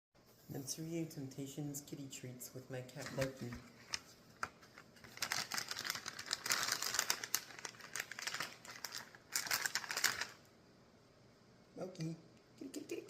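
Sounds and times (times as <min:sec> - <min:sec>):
plastic bag crinkling: 0:03.0 - 0:10.5
treats rattling: 0:05.1 - 0:10.4.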